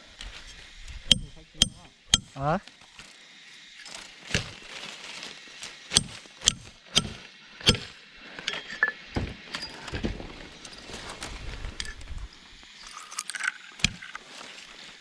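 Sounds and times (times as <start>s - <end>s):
sharp irregular knocks: 1.1s - 2.4s.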